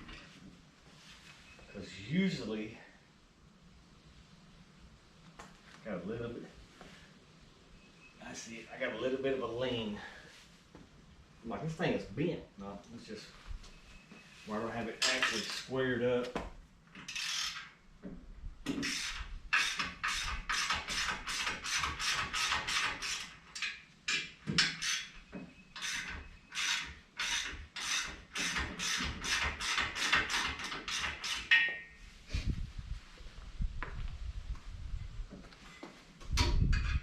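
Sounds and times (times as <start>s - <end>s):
ratchet wrench clicking: 17.1s - 17.7s.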